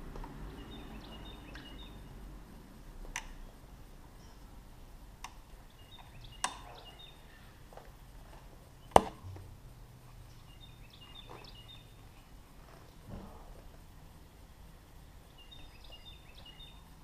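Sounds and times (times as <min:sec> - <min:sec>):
faint high chirps: 0:00.5 - 0:02.1.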